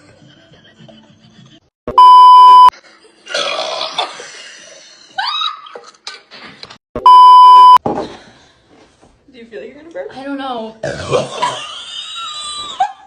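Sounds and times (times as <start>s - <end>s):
loud steady beeps: 1.9s - 2.7s, 7.0s - 7.8s
person burping: 3.3s - 4.2s, 10.8s - 11.6s.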